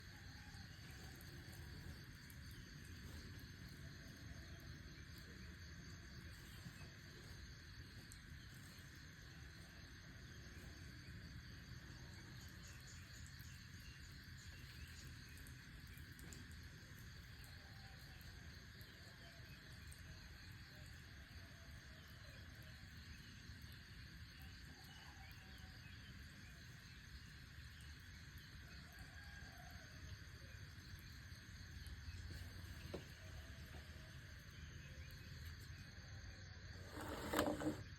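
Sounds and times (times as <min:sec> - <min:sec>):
faint ticks: 0:15.3 - 0:16.7.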